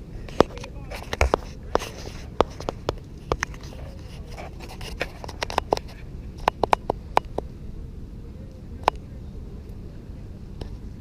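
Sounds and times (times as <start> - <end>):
steady low rumble: 0.0 - 11.0
sharp clicks and taps: 5.3 - 7.5.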